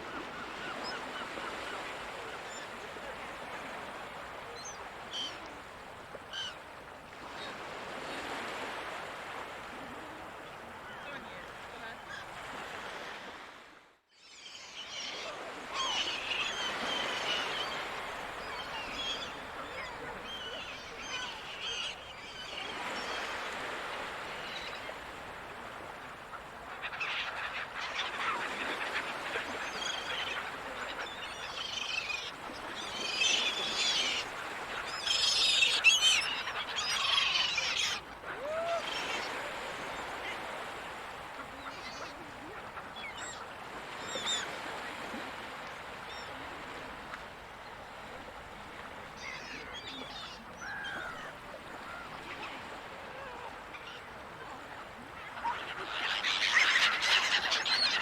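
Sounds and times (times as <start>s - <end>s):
seagulls calling: 14.5s - 25.1s, 26.6s - 45.2s, 49.0s - 58.0s.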